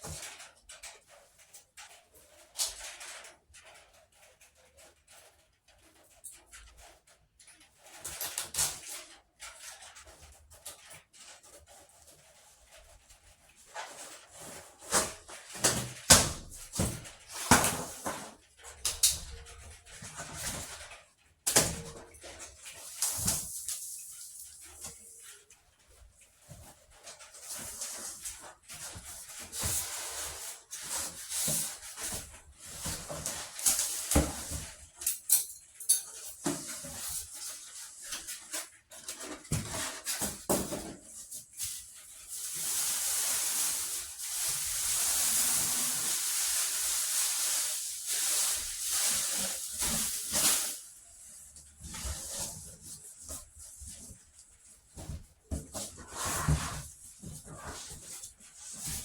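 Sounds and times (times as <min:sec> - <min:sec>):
hissing rustle: 0:41.5 - 0:51.1.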